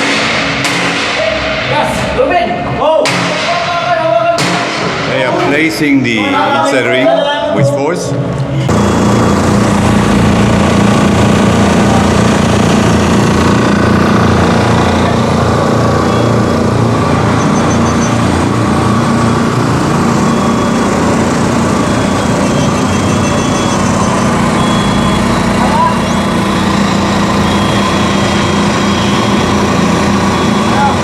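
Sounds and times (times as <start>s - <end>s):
machine engine humming: 8.1s - 31.0s.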